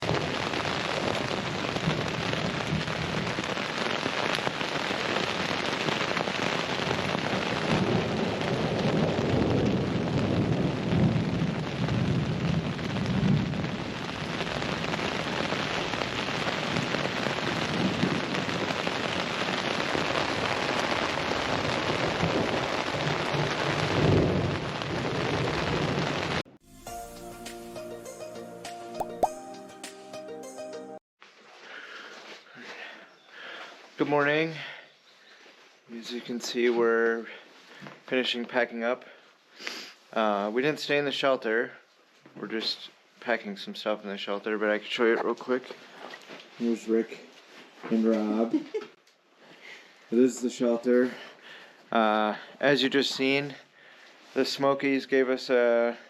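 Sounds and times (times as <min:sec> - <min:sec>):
thunder rumbling: 0:00.0 - 0:03.6, 0:06.8 - 0:19.6, 0:21.6 - 0:26.4
heavy rain: 0:00.0 - 0:26.5.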